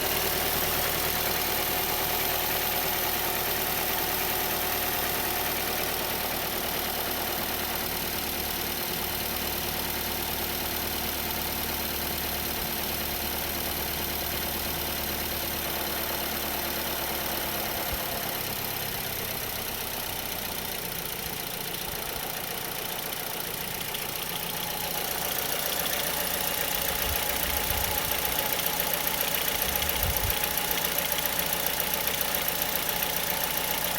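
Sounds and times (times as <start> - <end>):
car engine idling with knock: 16.3 - 33.9.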